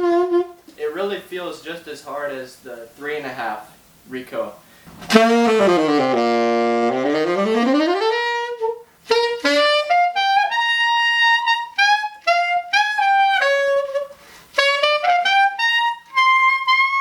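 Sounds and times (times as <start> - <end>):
tenor saxophone playing: 0.0 - 0.8, 5.1 - 17.0.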